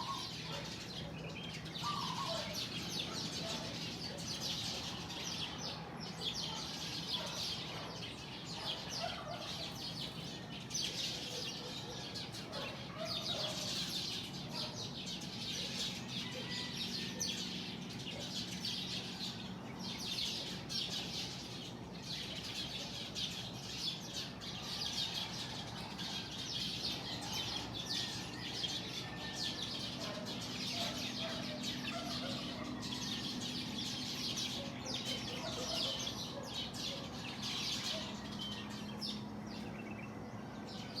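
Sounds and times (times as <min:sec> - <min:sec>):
small birds chirping: 0:00.0 - 0:41.0
lower bird calls: 0:01.8 - 0:04.8.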